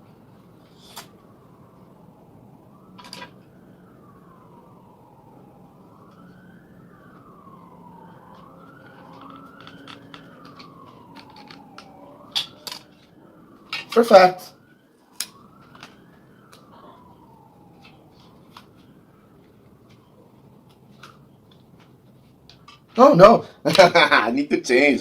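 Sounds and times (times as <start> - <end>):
siren wailing faintly: 0.0 - 25.0.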